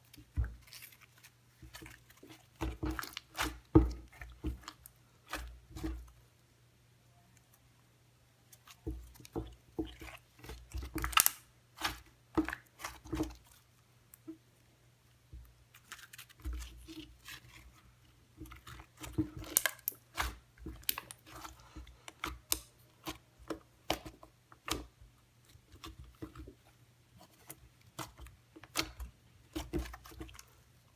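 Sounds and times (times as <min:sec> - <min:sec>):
slime squelching and popping: 0:08.6 - 0:13.5, 0:18.5 - 0:25.0.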